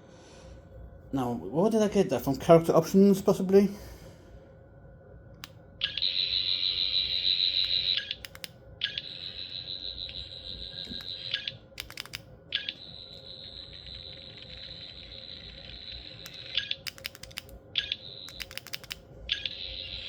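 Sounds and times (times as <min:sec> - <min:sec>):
toy high pulsing buzz: 0:05.8 - 0:20.0.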